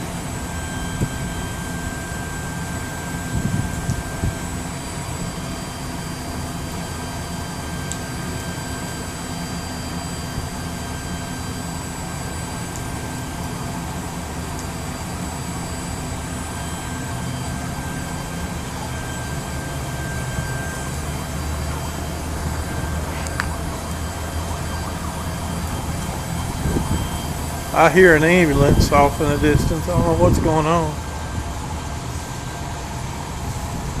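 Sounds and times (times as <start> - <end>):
distant emergency siren: 0.0 - 34.0
road traffic rumble: 11.9 - 34.0.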